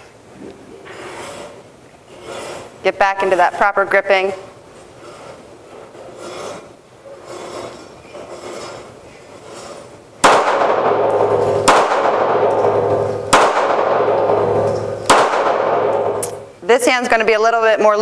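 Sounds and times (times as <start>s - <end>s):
pistol shots with ringing echo: 10.2s - 16.5s.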